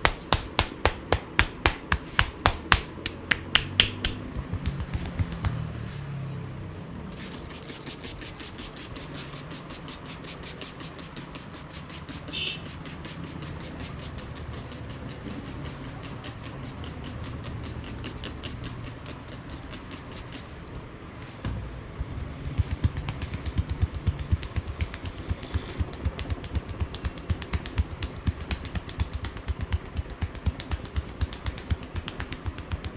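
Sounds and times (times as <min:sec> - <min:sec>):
hands tapping rhythmically: 0:00.0 - 0:05.8, 0:22.4 - 0:32.9.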